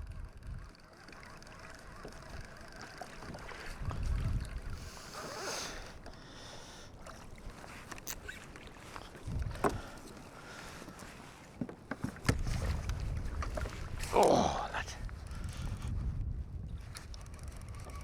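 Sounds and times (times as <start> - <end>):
water lapping around kayak: 0.0 - 18.0
wind gust on microphone: 3.8 - 5.0, 12.3 - 18.0.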